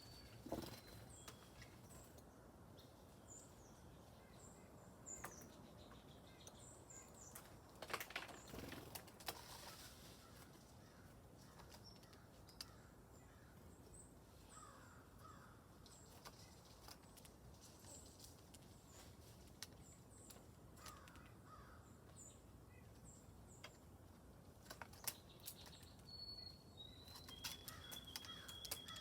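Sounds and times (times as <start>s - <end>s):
songbirds chirping: 0.0s - 29.0s.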